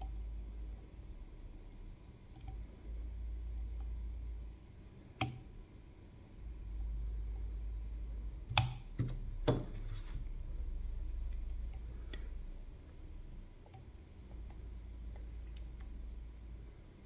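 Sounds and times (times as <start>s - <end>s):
lock-picking tools clicking: 8.5s - 9.7s.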